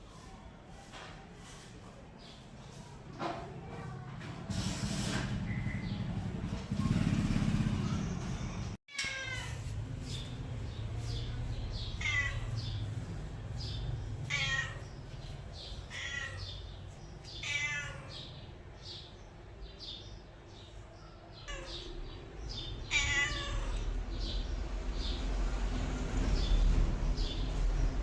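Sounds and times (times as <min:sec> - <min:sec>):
cat meowing: 0:08.9 - 0:09.7, 0:12.0 - 0:12.8, 0:14.2 - 0:15.0, 0:15.8 - 0:16.7, 0:17.3 - 0:18.3, 0:21.4 - 0:22.0, 0:22.6 - 0:24.0.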